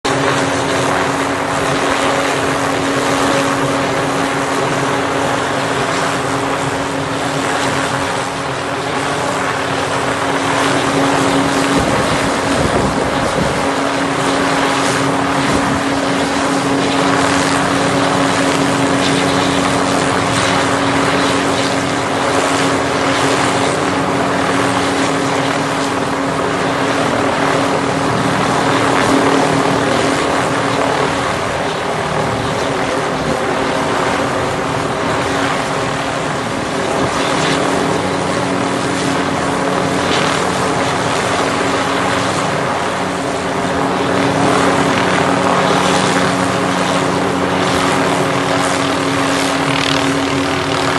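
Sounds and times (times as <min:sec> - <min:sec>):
helicopter engine and rotor: 0:00.0 - 0:50.9
wind rumble on microphone: 0:10.5 - 0:50.9.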